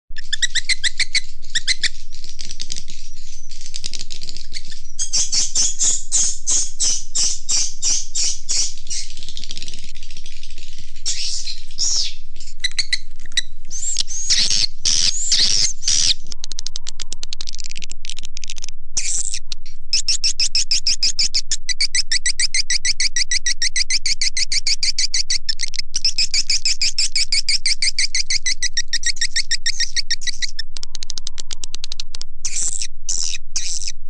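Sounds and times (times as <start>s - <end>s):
sweeping bird calls: 0.2s - 3.6s, 4.3s - 9.6s, 10.3s - 16.3s
swiftlet twittering chirps: 0.2s - 17.2s.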